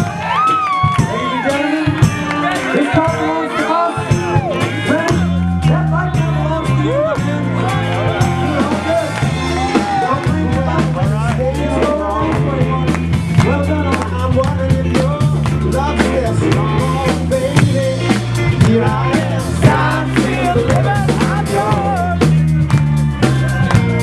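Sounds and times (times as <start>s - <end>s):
drum kit steady beat: 0.0s - 24.0s
rock music: 0.0s - 24.0s.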